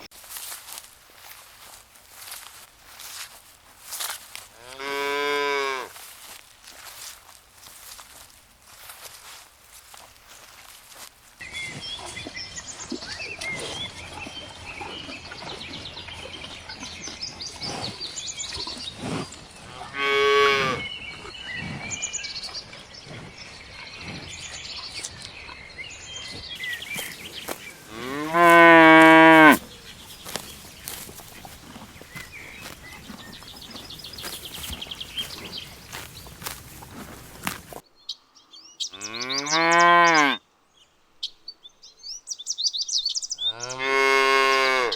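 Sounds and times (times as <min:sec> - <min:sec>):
cows mooing: 0:04.6 - 0:06.0, 0:19.7 - 0:20.8, 0:26.9 - 0:34.4, 0:39.0 - 0:40.4, 0:43.5 - 0:44.9.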